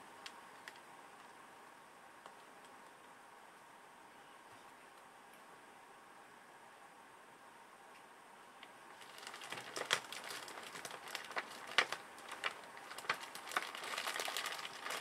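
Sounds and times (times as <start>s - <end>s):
clicks and crinkling from handling: 0.2s - 1.4s, 8.6s - 15.0s.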